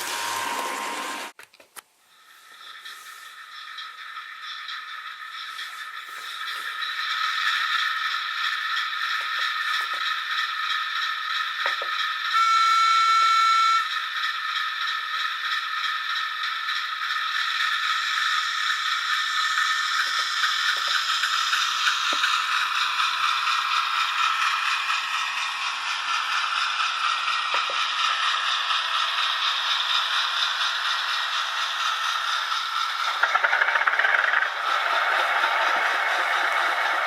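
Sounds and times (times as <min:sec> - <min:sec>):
model train motor whine: 0:00.0 - 0:01.4, 0:02.0 - 0:37.0
loud high steady tone: 0:12.3 - 0:13.9.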